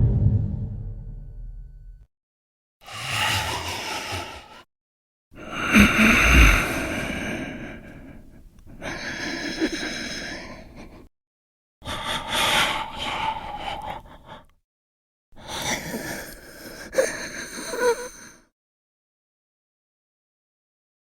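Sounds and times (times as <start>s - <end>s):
wheezing human breathing: 2.9s - 4.7s, 5.4s - 11.1s, 11.8s - 14.6s, 15.4s - 18.5s.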